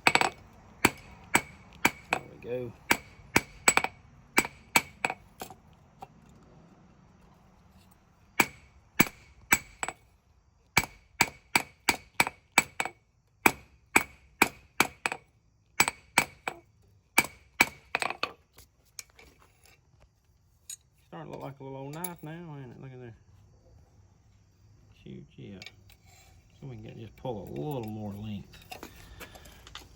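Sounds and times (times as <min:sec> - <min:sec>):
hammer clanging on anvil: 0:00.0 - 0:05.5.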